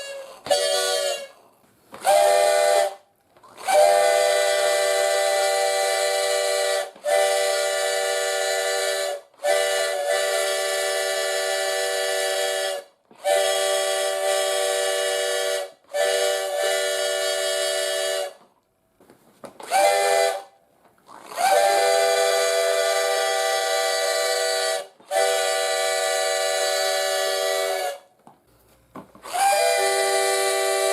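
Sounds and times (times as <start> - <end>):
train horn chord blasts: 29.3 - 30.9.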